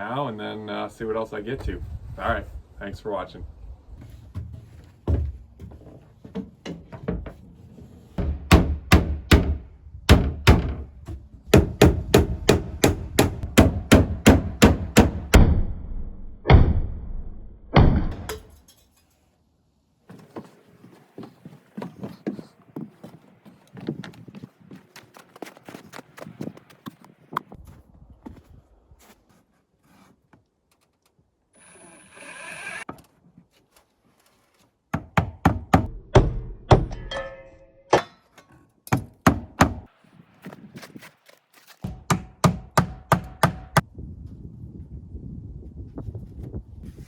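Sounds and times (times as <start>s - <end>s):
hammer striking nails: 8.2s - 10.9s, 11.5s - 15.4s, 35.0s - 37.2s, 38.9s - 39.9s, 41.8s - 43.8s.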